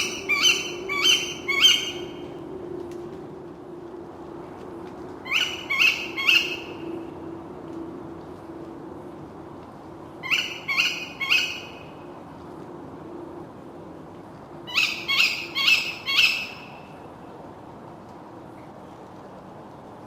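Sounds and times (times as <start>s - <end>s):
owl calls rising in pitch: 0.0s - 2.1s, 5.2s - 6.8s, 10.2s - 11.8s, 14.7s - 16.8s.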